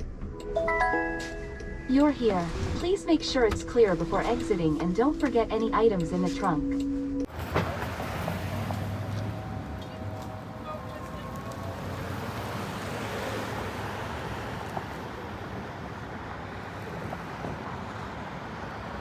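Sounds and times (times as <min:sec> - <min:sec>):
street traffic rushing: 0:07.3 - 0:19.0.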